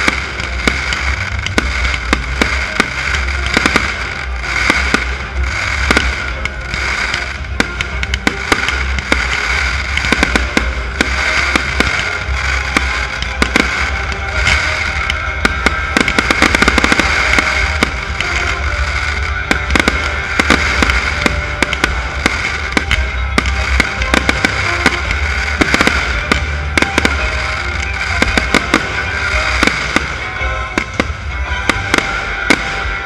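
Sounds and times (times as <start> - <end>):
fireworks bangs and crackles: 0.0 - 33.0
music playing: 0.0 - 33.0.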